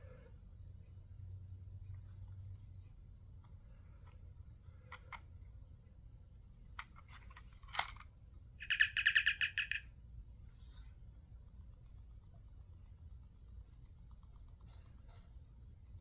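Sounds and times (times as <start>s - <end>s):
warbling electronic chirp: 8.6s - 9.8s
sharp clicks: 8.6s - 9.9s.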